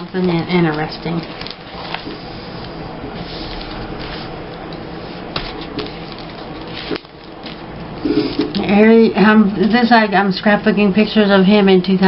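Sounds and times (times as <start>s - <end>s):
paper rustling: 0.0s - 8.8s.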